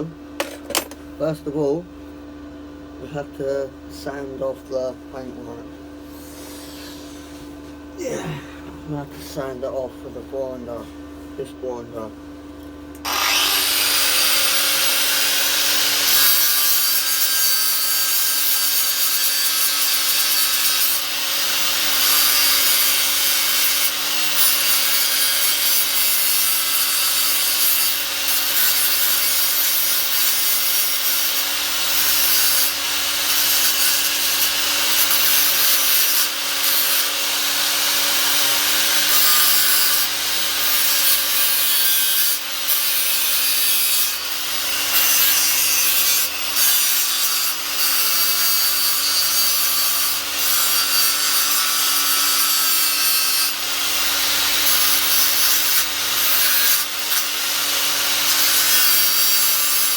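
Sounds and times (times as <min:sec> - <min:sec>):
angle grinder grinding metal: 0:13.0 - 0:59.9.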